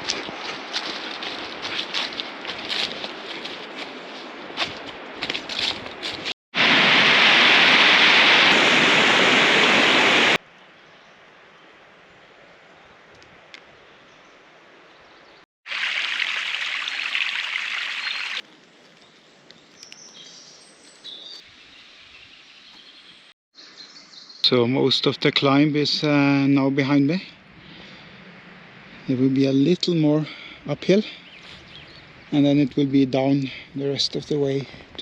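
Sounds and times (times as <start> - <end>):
stream rushing: 0.0 - 10.4, 15.7 - 18.4.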